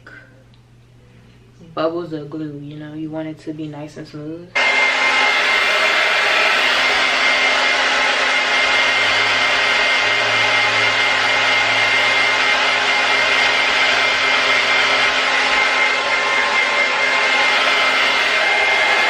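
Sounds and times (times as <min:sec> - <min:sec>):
hair dryer running: 0:04.6 - 0:19.0.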